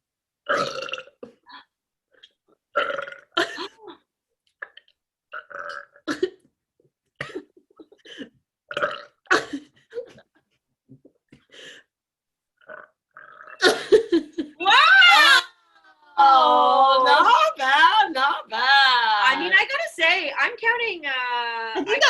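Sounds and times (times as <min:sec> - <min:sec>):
woman burping: 0:00.4 - 0:01.7, 0:02.7 - 0:06.5, 0:08.7 - 0:09.7, 0:12.6 - 0:14.0.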